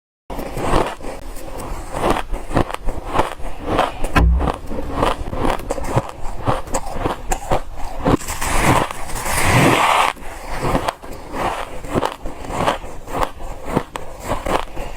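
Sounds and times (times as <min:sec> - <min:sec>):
dull thump: 0:04.2 - 0:04.7.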